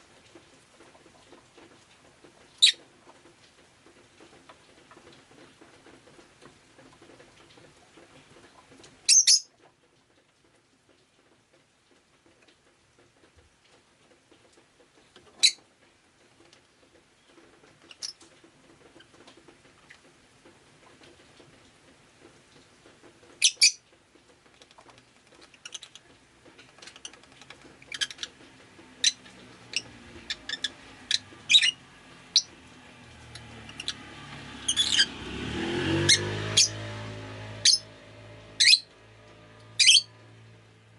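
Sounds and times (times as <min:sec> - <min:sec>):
lovebird giving shrill chirps: 0:39.8 - 0:40.1.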